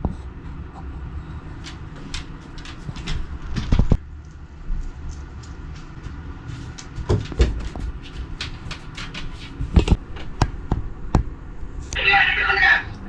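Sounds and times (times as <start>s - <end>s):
steady low rumble: 0.0s - 13.0s
clicks and knocks of objects: 1.6s - 10.8s.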